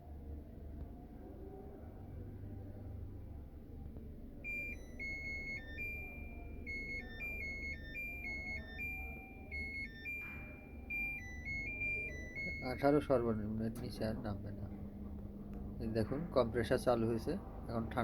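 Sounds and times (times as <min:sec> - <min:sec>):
electronic buzzer beeping tune: 0:04.5 - 0:13.1.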